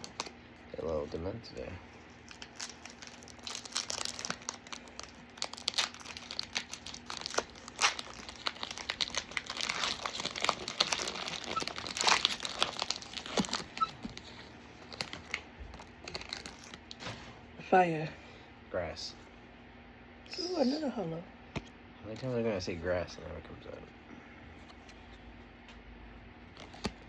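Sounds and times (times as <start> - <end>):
foil wrapper crinkling and tearing: 0.0 - 17.0.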